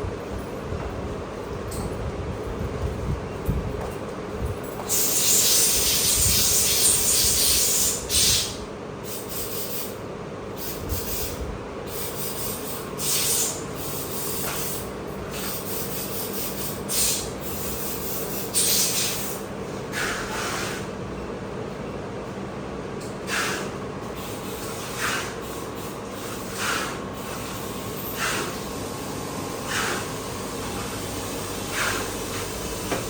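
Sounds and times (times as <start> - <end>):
steady background hum: 0.0 - 33.0
rubbing or scraping hiss: 4.9 - 8.5.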